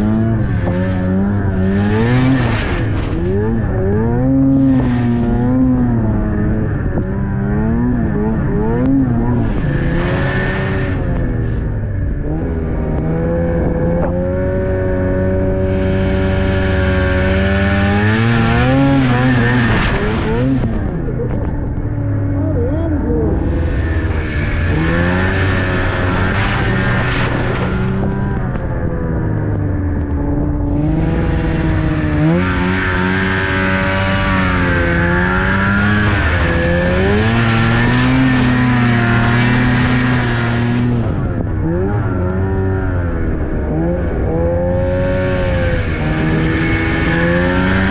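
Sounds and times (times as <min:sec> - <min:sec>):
snowmobile engine running: 0:00.0 - 0:47.9.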